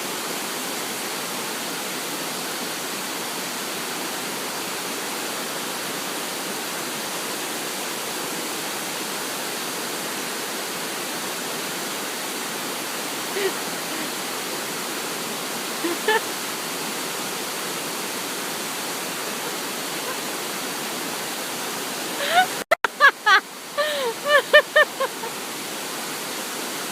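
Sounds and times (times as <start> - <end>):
waterfall rushing: 0.0 - 26.9.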